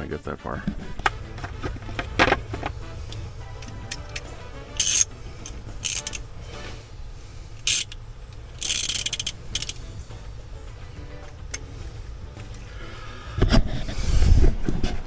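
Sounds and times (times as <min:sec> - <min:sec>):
ratchet-like clicking: 0:03.1 - 0:06.3, 0:07.6 - 0:10.0.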